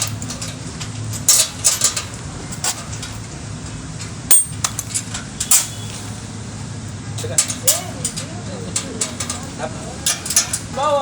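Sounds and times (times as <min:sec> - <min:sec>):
metal knocks and clinks: 0:00.0 - 0:03.3, 0:04.0 - 0:05.8, 0:07.2 - 0:10.8.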